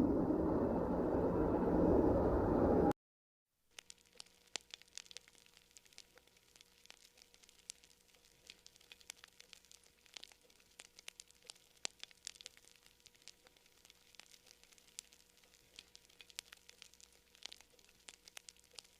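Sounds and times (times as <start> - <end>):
faint hum: 0.0 - 2.9
crackling clicks: 3.7 - 18.9.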